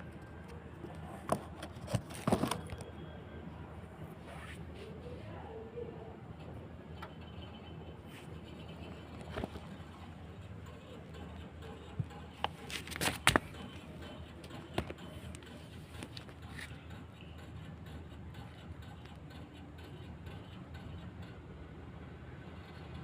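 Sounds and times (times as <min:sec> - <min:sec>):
air conditioner unit ticking: 0:00.0 - 0:01.8, 0:05.0 - 0:23.0.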